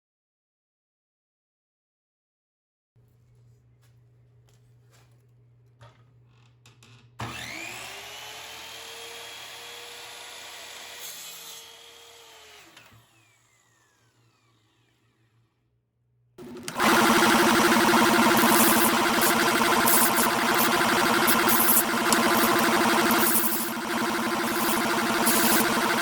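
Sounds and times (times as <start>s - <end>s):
power tool motor whine: 7.2s - 9.8s, 16.4s - 26.0s
loud dense sound: 16.7s - 26.0s.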